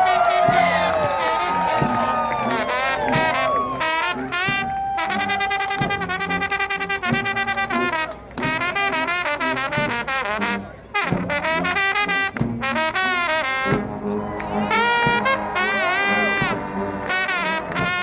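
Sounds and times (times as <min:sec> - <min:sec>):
trombone choir playing: 0:00.0 - 0:18.0.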